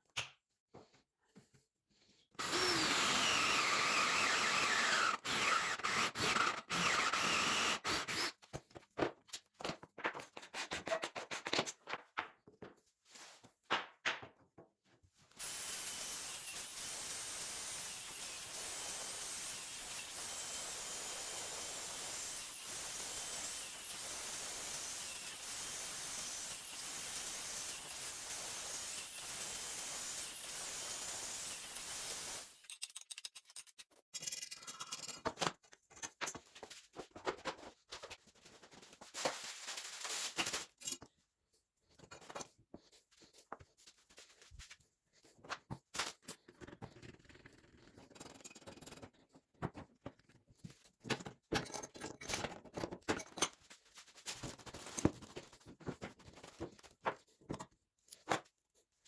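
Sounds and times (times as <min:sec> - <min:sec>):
small objects clicking and knocking: 0:32.6 - 0:36.5.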